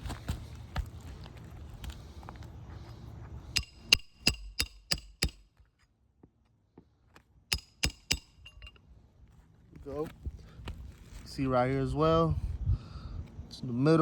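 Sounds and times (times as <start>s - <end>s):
hammer striking metal tool: 3.6s - 5.5s, 7.5s - 8.8s.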